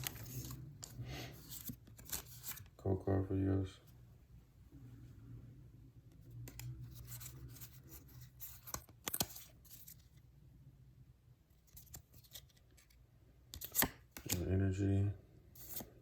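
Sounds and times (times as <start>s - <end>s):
trading cards snapping and rustling: 0.0s - 2.7s, 6.4s - 10.0s, 13.5s - 14.5s
low steady hum: 0.0s - 16.0s.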